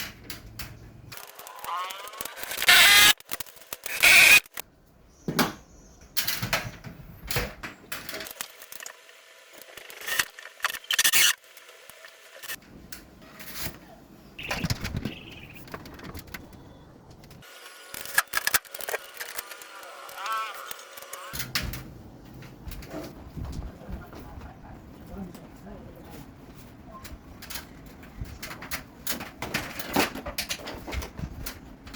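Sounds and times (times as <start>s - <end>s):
tools and parts clattering: 26.6s - 31.9s.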